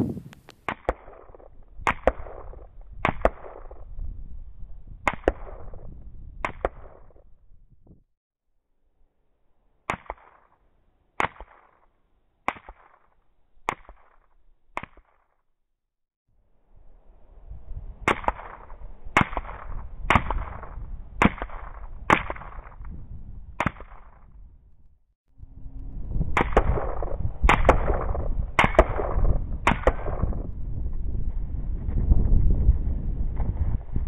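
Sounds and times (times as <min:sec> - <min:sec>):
rifle gunshots: 0:00.7 - 0:03.8, 0:26.4 - 0:30.4.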